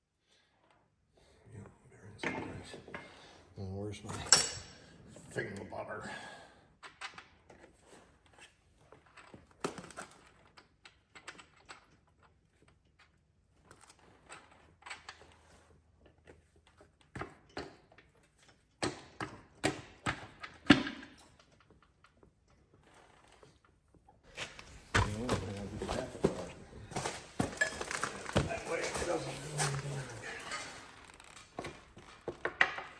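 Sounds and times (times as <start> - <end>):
metal hand tools clinking: 4.2 - 4.8, 26.9 - 31.1.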